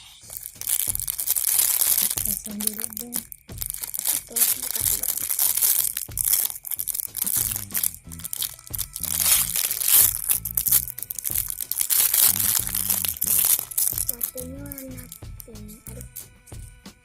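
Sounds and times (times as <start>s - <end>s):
background music: 0.0s - 17.0s
plastic wrapping crinkling and tearing: 0.3s - 16.2s.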